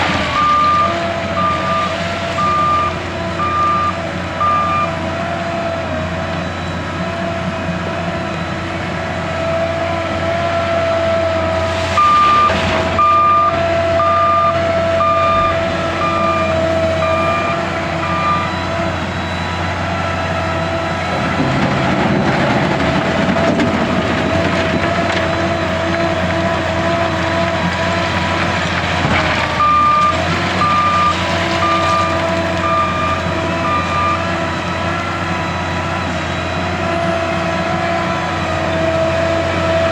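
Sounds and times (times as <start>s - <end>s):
diesel engine running: 0.0s - 39.9s
reversing alarm beeping: 0.3s - 5.0s, 11.9s - 27.4s, 29.5s - 37.8s
rough rumbling rush: 11.4s - 35.3s.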